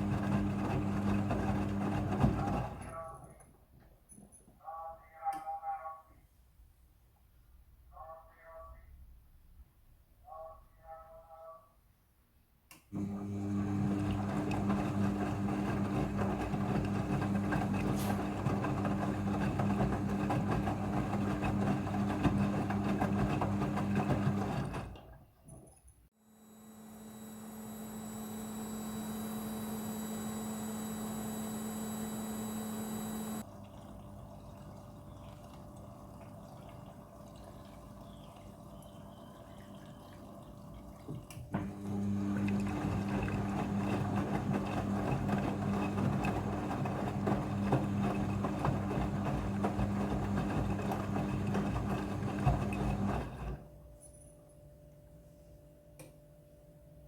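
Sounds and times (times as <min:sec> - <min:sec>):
washing machine motor hum: 0:00.0 - 0:03.4, 0:12.9 - 0:25.4, 0:26.2 - 0:53.7.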